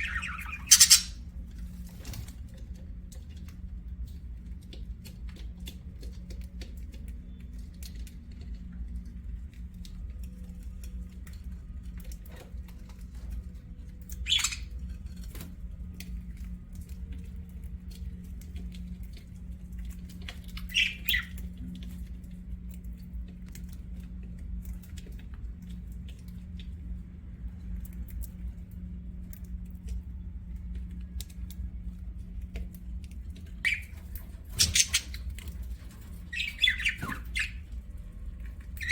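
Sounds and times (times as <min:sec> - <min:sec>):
budgerigar sharp calls: 0:00.0 - 0:01.2, 0:14.3 - 0:14.6, 0:34.6 - 0:35.1, 0:36.3 - 0:37.6
steady low hum: 0:00.0 - 0:38.9.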